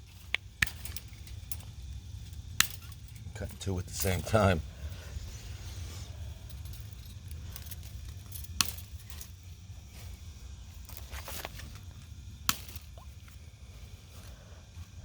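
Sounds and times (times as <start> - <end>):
wire cutters snapping wire: 0.0 - 4.7, 6.4 - 9.4, 10.9 - 13.3
light clicks of cutters: 2.6 - 4.6.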